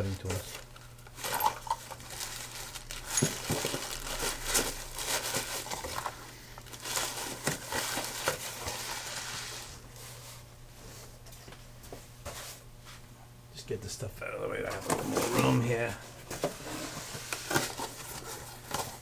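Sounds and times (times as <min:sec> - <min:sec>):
bag crinkling: 0:00.3 - 0:09.4.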